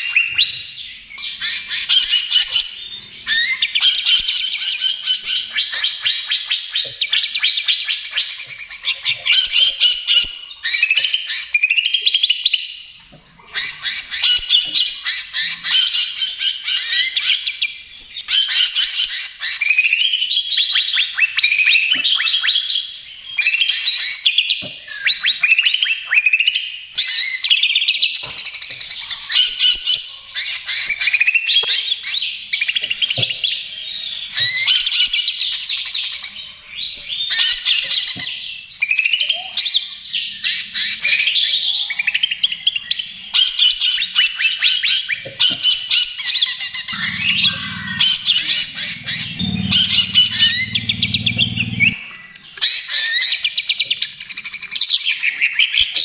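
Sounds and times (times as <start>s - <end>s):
bird singing chirps and trills: 0.0s - 56.0s.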